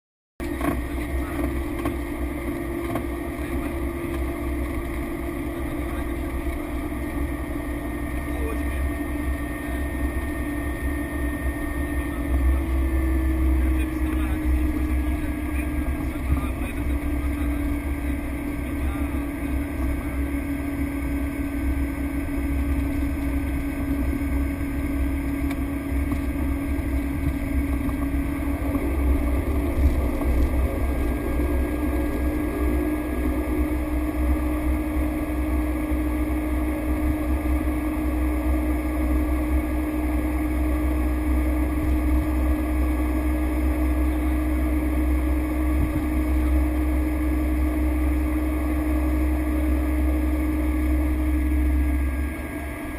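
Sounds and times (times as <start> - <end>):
turboprop engine drone: 0.4 - 52.9.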